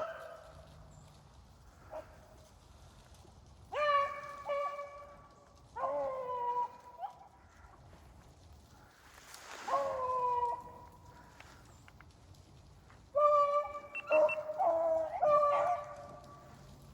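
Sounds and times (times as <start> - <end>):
hounds baying: 13.1 - 16.5
dog yelp: 13.2 - 16.2.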